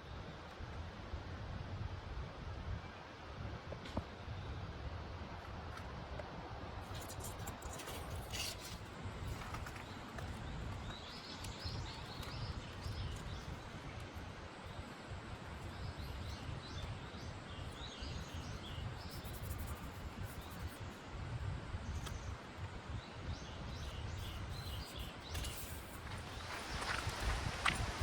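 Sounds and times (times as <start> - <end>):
small birds chirping: 6.8 - 21.0, 21.8 - 28.0.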